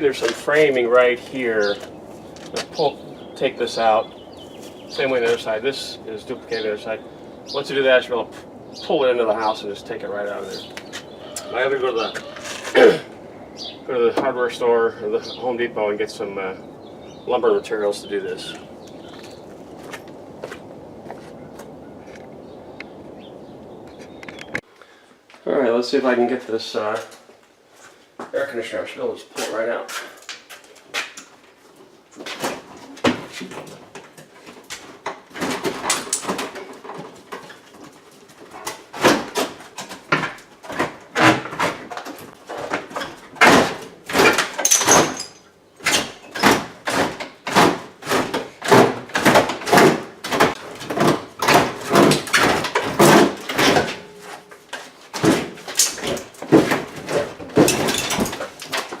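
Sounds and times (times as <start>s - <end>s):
air conditioner scraping and creaking: 46.0s - 59.0s.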